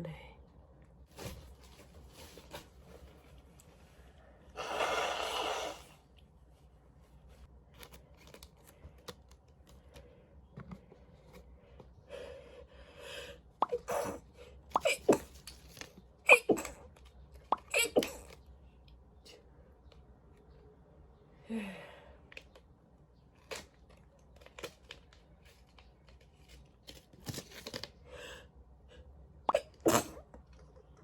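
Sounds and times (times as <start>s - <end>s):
person sneezing: 17.6s - 18.2s.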